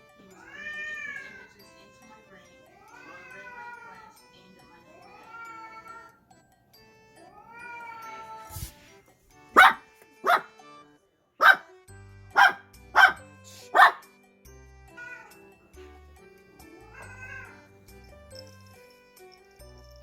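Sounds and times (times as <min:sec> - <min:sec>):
light background music: 0:00.0 - 0:20.0
cat meowing: 0:00.4 - 0:01.4, 0:02.8 - 0:04.1, 0:05.1 - 0:06.2, 0:07.4 - 0:08.6, 0:15.0 - 0:15.3, 0:16.8 - 0:17.6
dog barking: 0:09.6 - 0:10.5, 0:11.4 - 0:11.7, 0:12.4 - 0:14.1.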